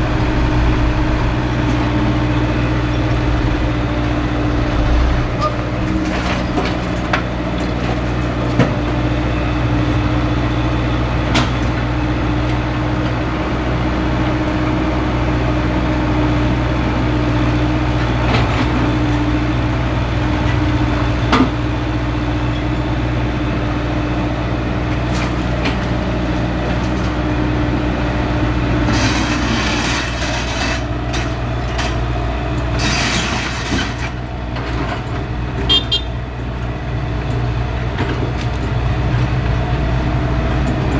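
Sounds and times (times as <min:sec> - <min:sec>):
rushing hissing noise: 0:00.0 - 0:05.8
excavator engine running: 0:00.0 - 0:10.9.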